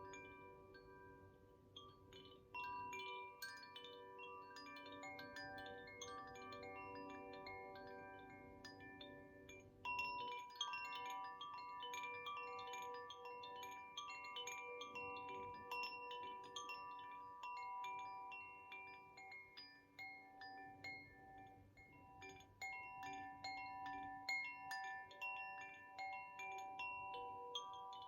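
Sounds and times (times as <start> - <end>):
wind chime ringing: 0.0 - 28.0.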